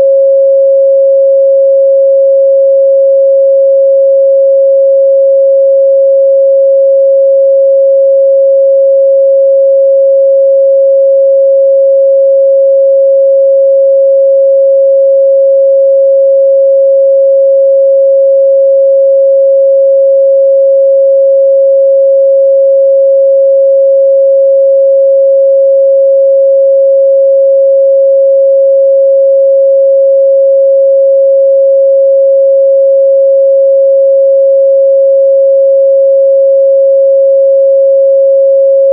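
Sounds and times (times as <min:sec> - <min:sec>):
sine-wave test tone: 0:00.0 - 0:38.9.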